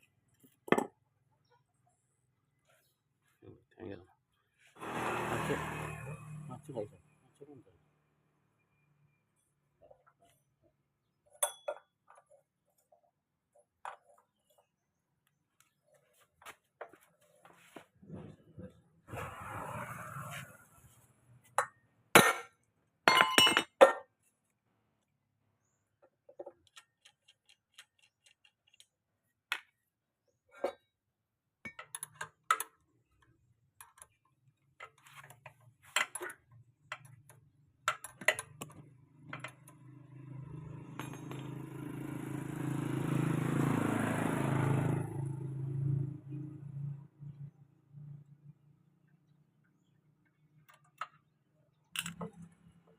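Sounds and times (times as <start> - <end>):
hand tools clinking on metal: 23.1 - 24.0.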